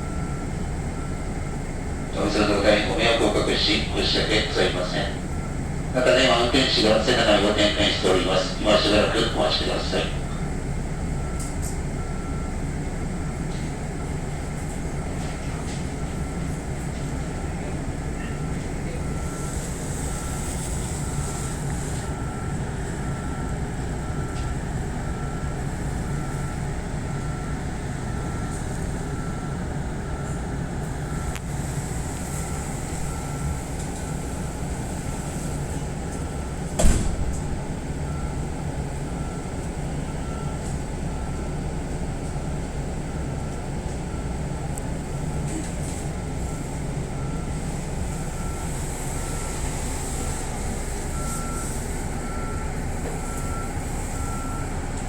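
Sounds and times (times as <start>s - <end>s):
electric train hum: 0.0s - 55.0s.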